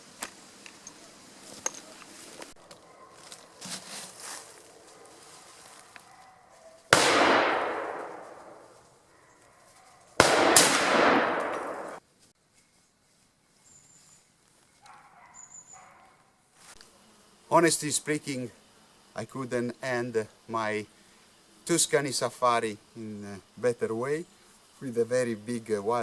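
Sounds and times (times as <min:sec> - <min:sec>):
rifle shots with rolling echo: 0:06.9 - 0:08.7, 0:10.2 - 0:12.0.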